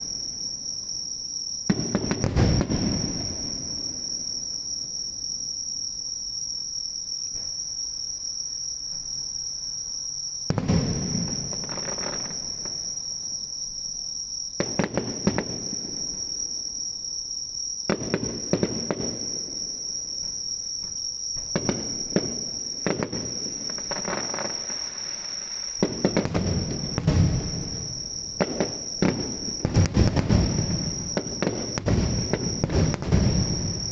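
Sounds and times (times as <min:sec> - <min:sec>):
insects chirring: 0:00.0 - 0:33.9
fireworks booming and crackling: 0:01.6 - 0:04.5, 0:10.5 - 0:13.0, 0:14.6 - 0:16.5, 0:17.9 - 0:33.9.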